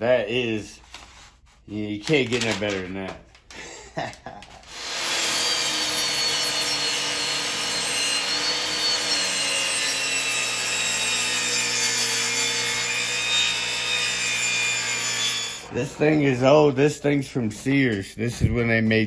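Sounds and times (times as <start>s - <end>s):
power saw cutting wood: 4.6s - 16.8s.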